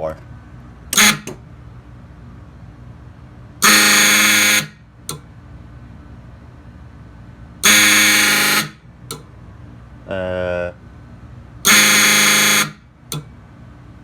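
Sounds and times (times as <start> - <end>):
fire alarm horn blasts: 0.9 - 1.4, 3.6 - 4.9, 7.6 - 8.9, 11.6 - 12.9.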